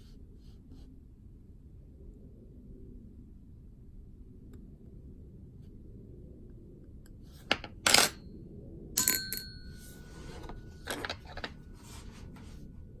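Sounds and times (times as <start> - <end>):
metal parts clattering: 7.5 - 8.2, 10.2 - 11.6
metallic ring: 7.6 - 8.2, 9.0 - 12.6.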